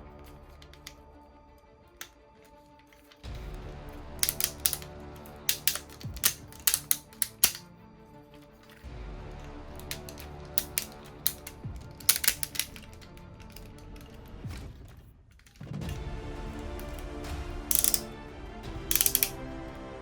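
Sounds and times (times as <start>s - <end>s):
background music: 0.0s - 20.0s
plastic toy parts clicking: 0.2s - 1.0s, 2.0s - 3.3s, 4.1s - 7.7s, 8.4s - 8.9s, 9.7s - 14.7s, 15.3s - 16.0s, 16.6s - 18.1s, 18.8s - 19.4s.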